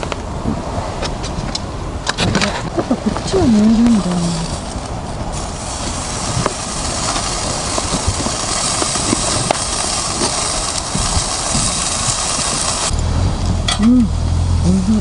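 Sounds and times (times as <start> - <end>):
meat sizzling on a charcoal grill: 3.5 - 15.0.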